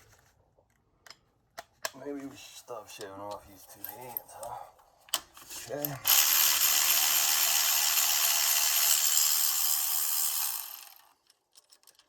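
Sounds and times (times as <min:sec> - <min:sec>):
power ratchet spinning bolt: 0:06.0 - 0:11.1.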